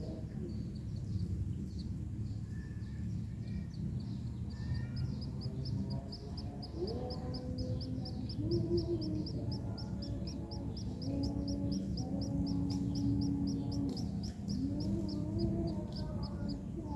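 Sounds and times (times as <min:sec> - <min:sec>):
birds chirping: 0:00.0 - 0:16.9
steady low rumble: 0:00.0 - 0:16.9
other bird calls: 0:04.3 - 0:16.9.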